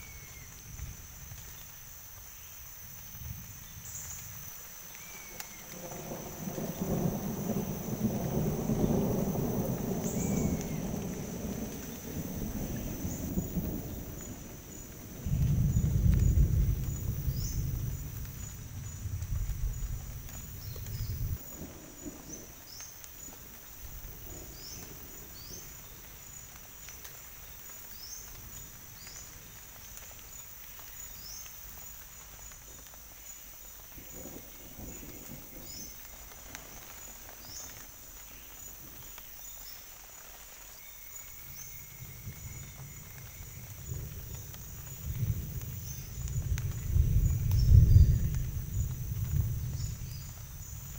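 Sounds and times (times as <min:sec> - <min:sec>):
thunder rumbling: 0:03.0 - 0:31.7, 0:33.7 - 0:39.7, 0:41.3 - 0:50.9.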